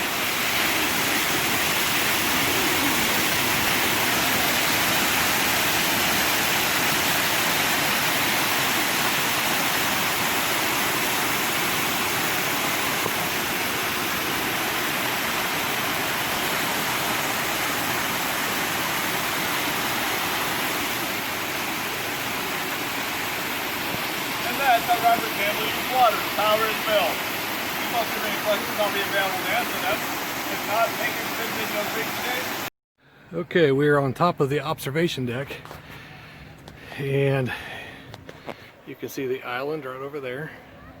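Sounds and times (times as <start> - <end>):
water rushing through flume: 0.0 - 32.7.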